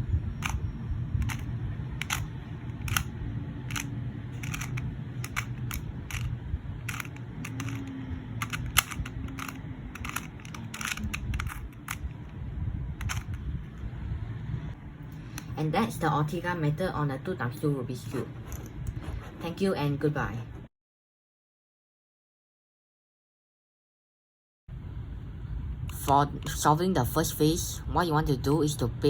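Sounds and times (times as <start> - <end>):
puzzle cube clicking: 0.4 - 0.6, 1.2 - 12.2, 13.0 - 13.4.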